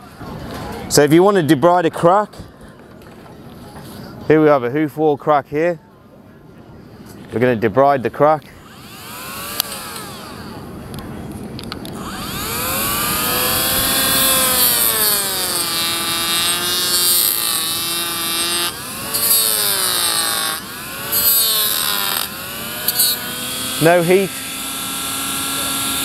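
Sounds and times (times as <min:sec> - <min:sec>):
grinder motor whine: 0:08.4 - 0:26.0
disc grinding hoof: 0:08.6 - 0:10.6, 0:11.9 - 0:26.0.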